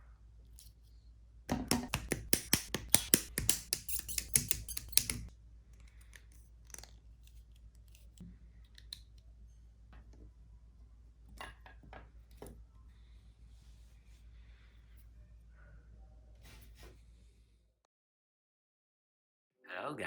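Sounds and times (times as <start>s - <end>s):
plastic clicks and snaps: 1.6s - 9.3s.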